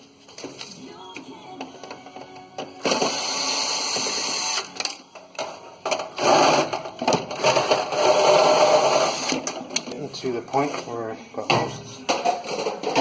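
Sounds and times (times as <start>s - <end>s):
cordless drill motor whining: 2.8s - 4.7s.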